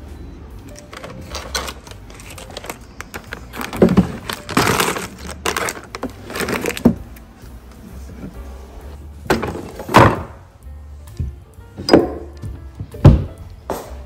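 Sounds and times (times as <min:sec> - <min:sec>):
rustling and crinkling handling: 0:00.7 - 0:08.7.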